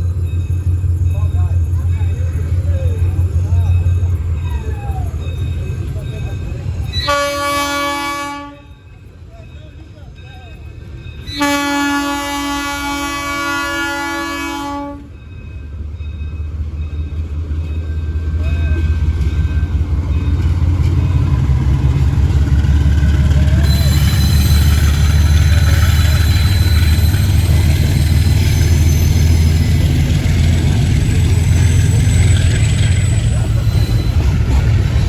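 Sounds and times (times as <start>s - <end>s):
locomotive horn: 6.9s - 8.7s, 11.3s - 15.1s.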